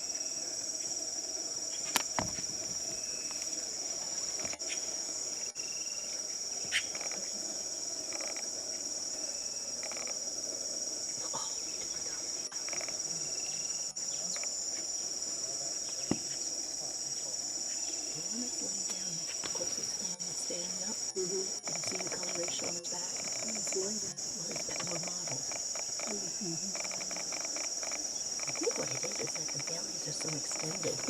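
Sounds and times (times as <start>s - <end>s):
insects chorus: 0.0s - 31.0s
sharp clicks: 21.6s - 23.9s, 24.5s - 31.0s.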